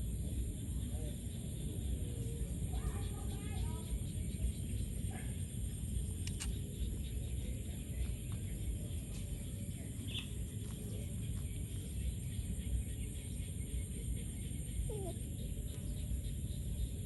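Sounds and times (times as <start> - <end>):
animal high chirp: 14.8 - 15.2.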